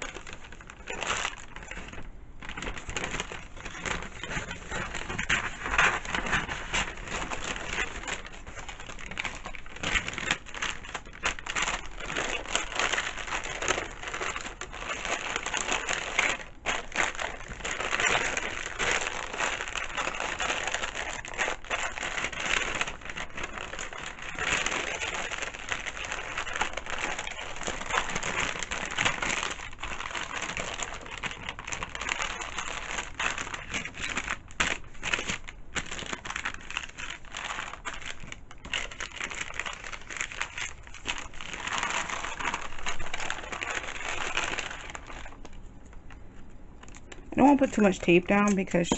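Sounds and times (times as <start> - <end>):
wrapping paper crinkling: 0.0 - 48.9.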